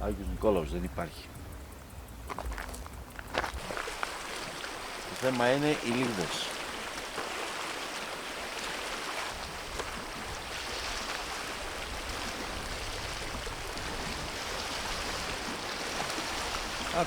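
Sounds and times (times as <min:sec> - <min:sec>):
small waves washing on shore: 0:02.3 - 0:17.0.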